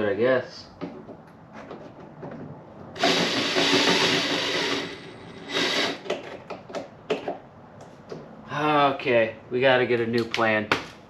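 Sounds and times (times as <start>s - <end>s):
power drill grinding on rivet: 3.0s - 6.1s.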